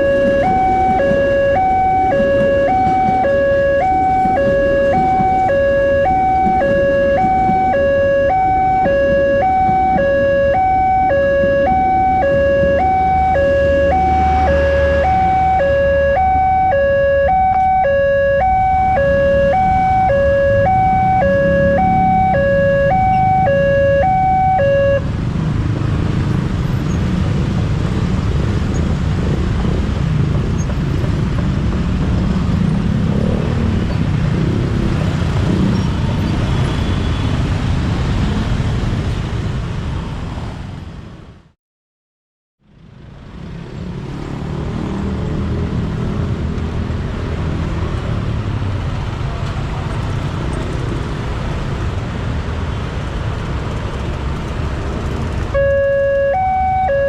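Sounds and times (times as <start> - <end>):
two-tone level crossing alarm: 0.0 - 25.0, 55.5 - 57.0
road traffic rumble: 0.0 - 41.5, 42.6 - 57.0.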